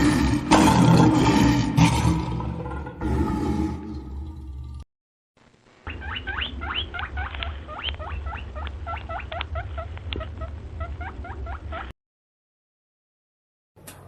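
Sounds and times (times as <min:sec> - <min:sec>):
small animal squeaking: 0:05.9 - 0:11.9.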